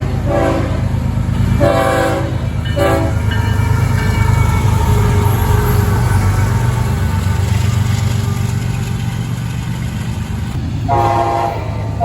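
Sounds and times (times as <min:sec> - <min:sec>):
locomotive air horn blasts: 0:00.0 - 0:01.0, 0:01.6 - 0:03.3, 0:10.8 - 0:12.0
diesel engine low rumble: 0:00.0 - 0:12.0.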